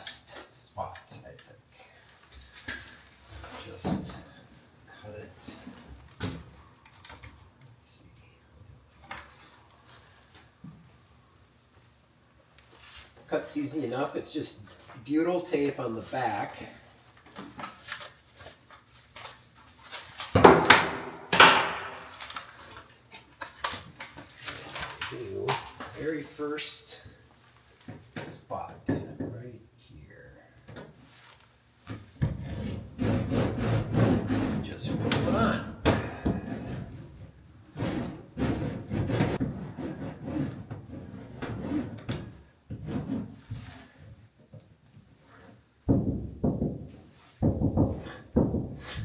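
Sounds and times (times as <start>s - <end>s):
rustles and clicks of foil mat: 17.1s - 20.4s, 22.1s - 26.1s
hand roller rubbing on metal panel: 32.3s - 37.2s, 37.8s - 42.0s, 42.8s - 44.0s.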